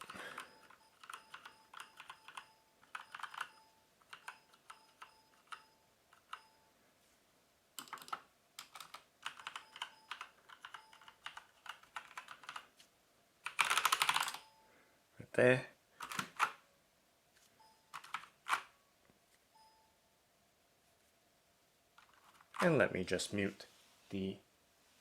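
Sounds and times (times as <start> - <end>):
mechanical keyboard typing: 0.0 - 5.6, 7.8 - 12.7, 13.4 - 14.4, 16.0 - 16.6, 17.9 - 18.7.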